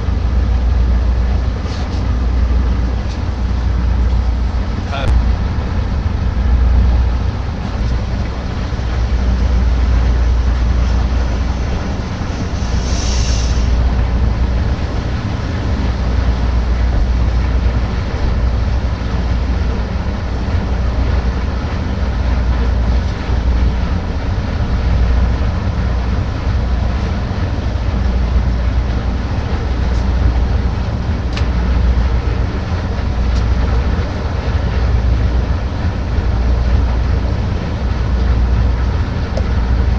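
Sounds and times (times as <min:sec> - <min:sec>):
heavy machinery rumbling: 0:00.0 - 0:39.9
brief hiss: 0:12.6 - 0:13.8.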